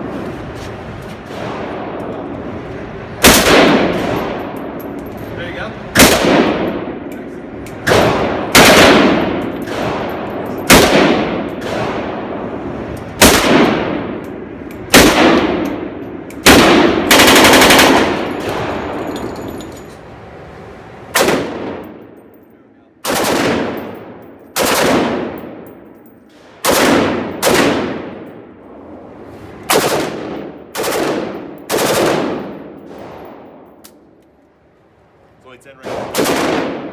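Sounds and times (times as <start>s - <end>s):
gunshots with echoing tail: 1.2s - 2.3s, 3.2s - 4.9s, 6.0s - 7.1s, 7.8s - 19.3s, 21.2s - 22.2s, 23.0s - 28.6s, 29.7s - 33.8s, 35.8s - 36.9s
rapid fire burst: 1.2s - 4.2s, 5.8s - 7.0s, 7.8s - 14.1s, 16.4s - 18.9s, 21.1s - 22.0s, 23.0s - 25.4s, 26.4s - 28.2s, 29.7s - 33.2s, 35.8s - 36.9s.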